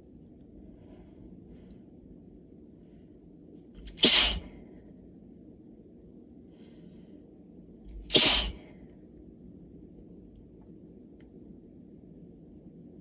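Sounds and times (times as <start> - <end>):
person sneezing: 3.8 - 4.5, 7.9 - 8.6
brief intake of breath: 3.8 - 4.6, 7.9 - 8.7.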